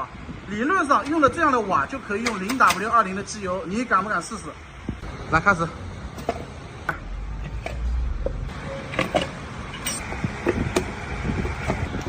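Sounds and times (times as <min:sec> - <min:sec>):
clicks of metal parts and tools: 0:02.2 - 0:03.0, 0:06.2 - 0:10.9.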